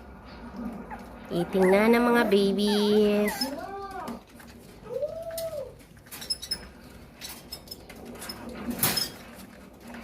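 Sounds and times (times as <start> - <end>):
puppy whining: 0.5 - 4.2.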